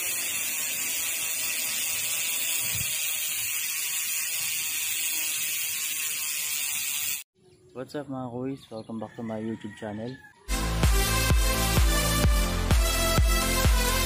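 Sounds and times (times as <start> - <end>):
bike hub ratcheting buzz: 0.0 - 7.3.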